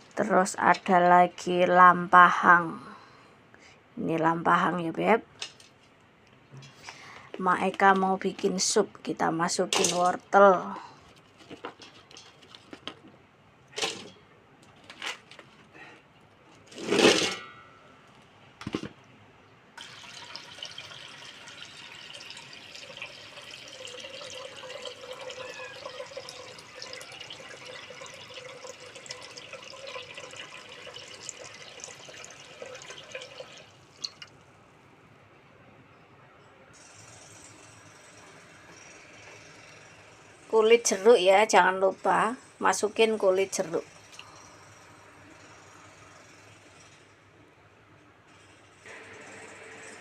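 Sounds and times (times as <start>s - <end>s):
water running: 19.8s - 34.3s.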